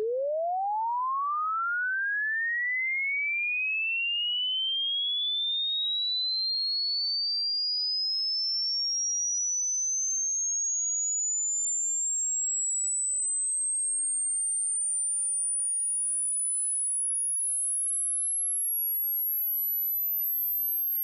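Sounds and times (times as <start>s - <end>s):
rising high-pitched sine tone: 0.0s - 2.9s, 8.7s - 21.0s.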